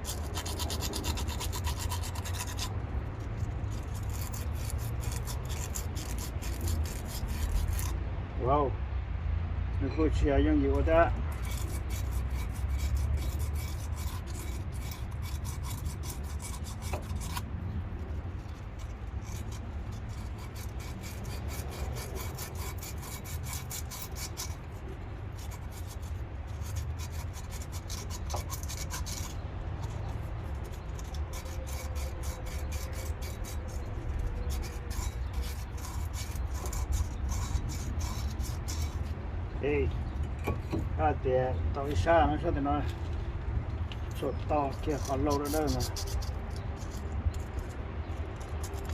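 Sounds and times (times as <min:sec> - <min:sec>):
scrubbing metal by hand: 0:00.0 - 0:08.0, 0:11.3 - 0:39.2, 0:44.0 - 0:48.9.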